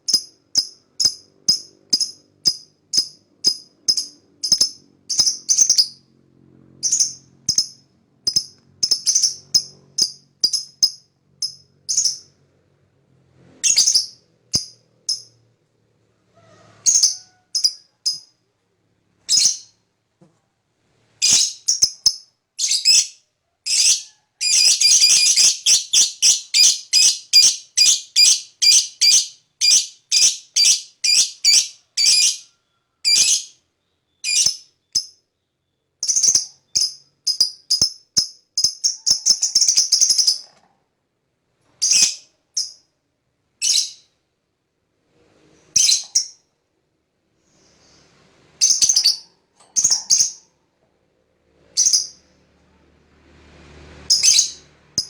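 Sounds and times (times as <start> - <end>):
lovebird chirping: 0.0 - 6.0, 6.8 - 12.3, 13.6 - 15.4, 16.9 - 18.3, 19.3 - 19.8, 21.2 - 40.5, 43.6 - 44.1, 45.7 - 46.5, 48.6 - 50.5, 51.8 - 52.2, 54.1 - 54.6.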